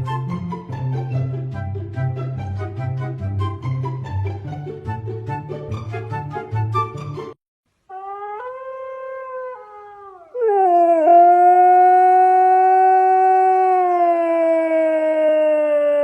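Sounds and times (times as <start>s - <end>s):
dog howling: 7.9s - 16.0s.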